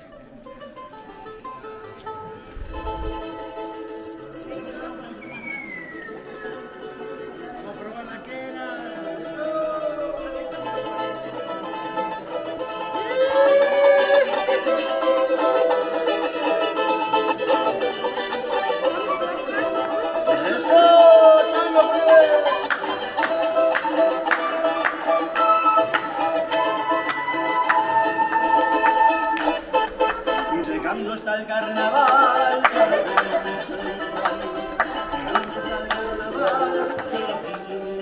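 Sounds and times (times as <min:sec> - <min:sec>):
plucked string instrument strummed: 0:00.8 - 0:38.0
person singing long notes: 0:12.9 - 0:38.0.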